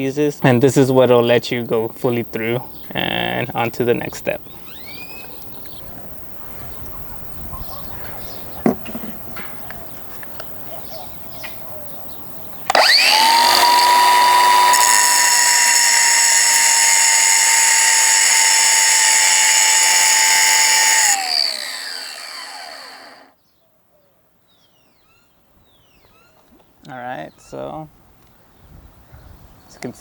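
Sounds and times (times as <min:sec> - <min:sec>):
electric grinder whining on steel: 0:12.6 - 0:23.3.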